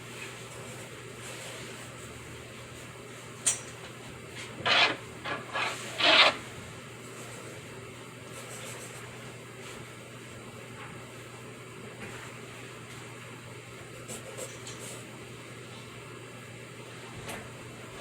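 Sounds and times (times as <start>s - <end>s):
pencil scratching on paper: 4.6s - 6.4s.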